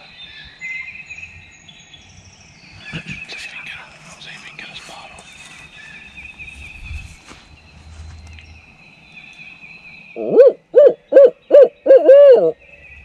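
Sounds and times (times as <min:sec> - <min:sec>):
owl call hoots: 0:10.2 - 0:12.6.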